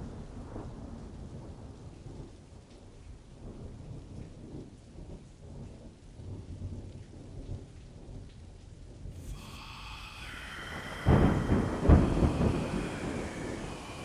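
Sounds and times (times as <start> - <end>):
rain: 0.0 - 14.0
high hiss: 9.2 - 14.0
thunder clap: 10.3 - 14.0.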